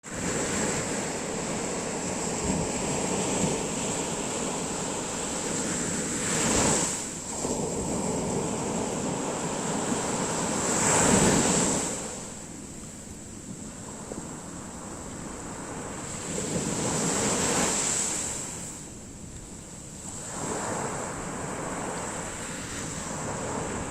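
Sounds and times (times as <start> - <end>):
big waves breaking: 0.0 - 12.9, 13.5 - 23.9
sea surf washing ashore: 0.0 - 23.9.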